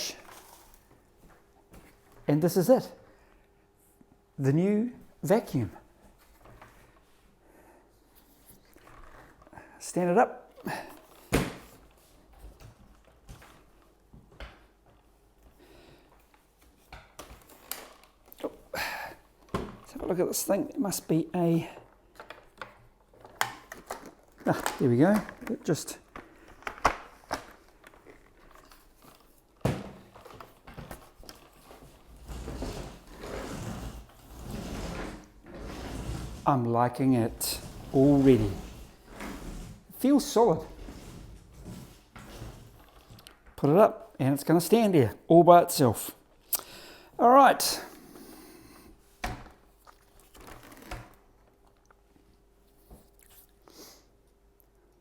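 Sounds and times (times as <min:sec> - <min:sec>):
crinkly plastic rustling: 0:21.8 - 0:32.7.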